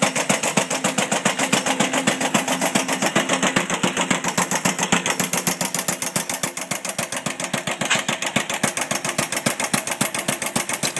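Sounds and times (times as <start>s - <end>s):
two-stroke engine running: 0.0s - 10.9s.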